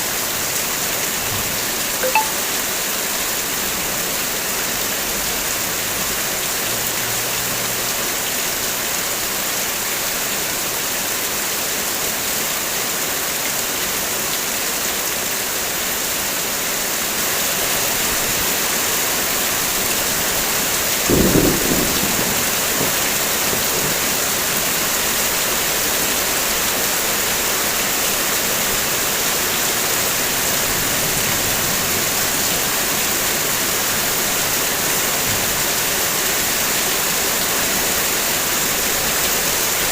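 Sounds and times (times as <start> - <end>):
heavy rain falling: 0.0 - 39.9
low rumble of thunder: 21.1 - 24.0.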